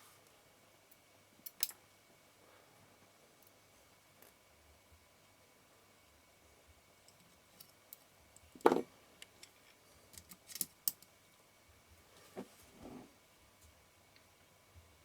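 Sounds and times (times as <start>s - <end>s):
small clicks of metal parts: 0.9s - 1.8s, 7.0s - 11.1s.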